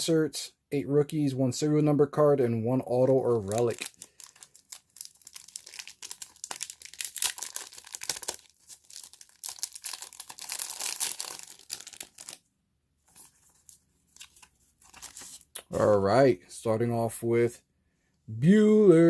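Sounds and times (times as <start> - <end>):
wrapper crinkling and tearing: 3.1 - 12.4, 13.1 - 15.5.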